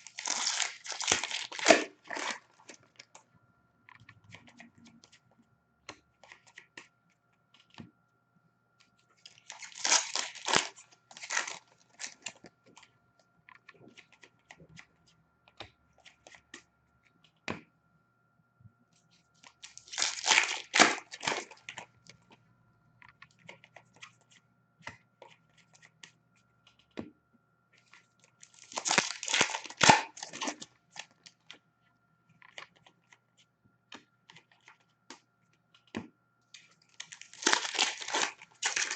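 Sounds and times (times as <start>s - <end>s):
wrappers torn and crinkled: 0.0s - 2.8s, 9.3s - 12.4s, 19.6s - 21.8s, 28.4s - 31.1s, 37.0s - 38.9s.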